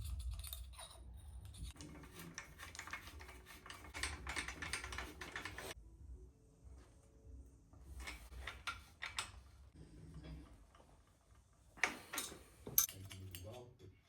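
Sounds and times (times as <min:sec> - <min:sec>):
metal parts clicking and tapping: 0:00.0 - 0:05.8, 0:08.0 - 0:09.4, 0:11.8 - 0:13.6.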